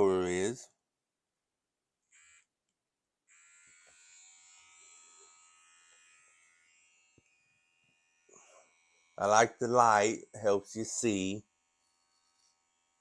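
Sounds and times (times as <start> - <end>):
electric trimmer whining: 2.1 - 2.4, 3.3 - 10.2.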